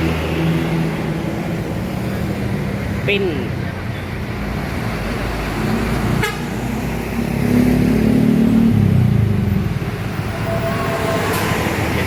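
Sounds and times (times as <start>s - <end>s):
bus diesel engine passing: 0.0s - 12.0s
bus horn blast: 6.2s - 6.6s.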